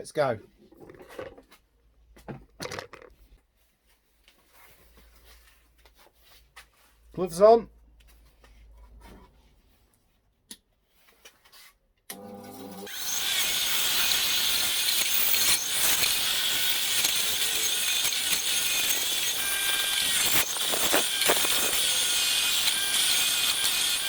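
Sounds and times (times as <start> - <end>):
wire brush wheel scraping metal: 12.4 - 24.0.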